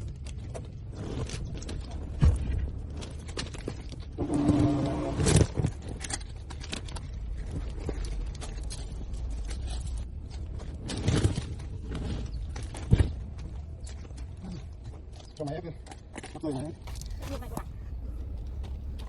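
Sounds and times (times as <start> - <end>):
steady low hum: 16.9 - 19.0.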